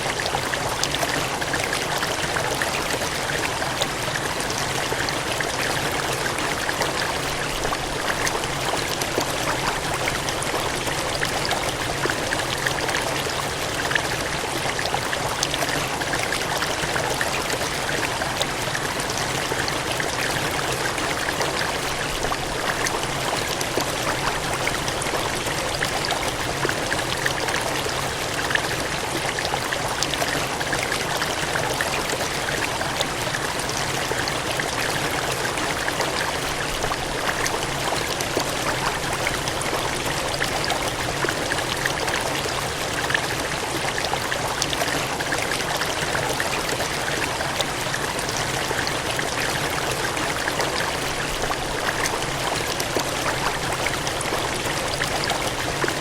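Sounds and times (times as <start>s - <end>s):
water gushing: 0.0s - 56.0s.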